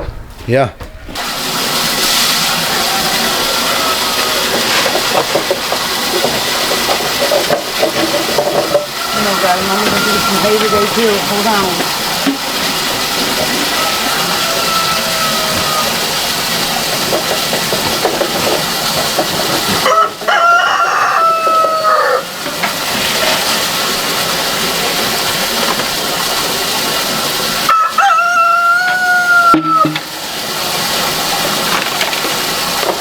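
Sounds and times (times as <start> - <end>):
rooster crowing: 2.4 - 5.4, 8.8 - 12.2, 13.0 - 16.3, 19.8 - 22.4, 27.7 - 30.1.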